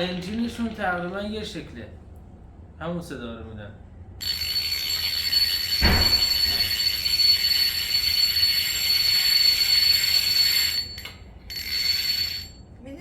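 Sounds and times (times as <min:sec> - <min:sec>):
alarm clock bell ringing: 0:04.2 - 0:12.6.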